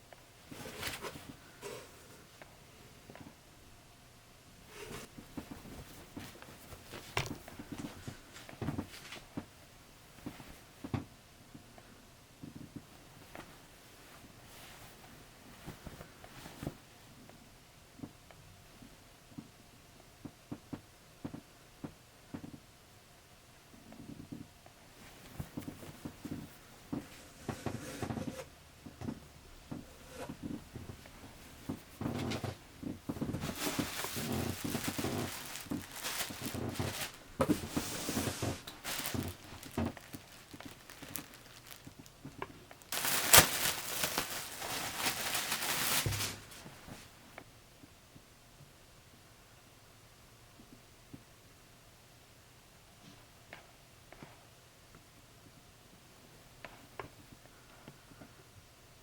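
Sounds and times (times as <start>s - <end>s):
rustling: 0.4s - 2.5s, 4.6s - 9.4s, 29.9s - 47.2s
handling noises while unpacking: 0.5s - 2.3s, 4.7s - 9.5s, 25.0s - 47.2s.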